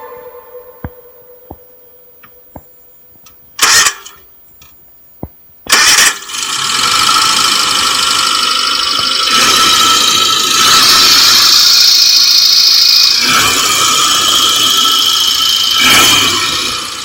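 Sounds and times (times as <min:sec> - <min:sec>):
car engine cranking and starting: 0:03.6 - 0:04.2, 0:05.7 - 0:17.0
engine running steadily: 0:05.7 - 0:17.0.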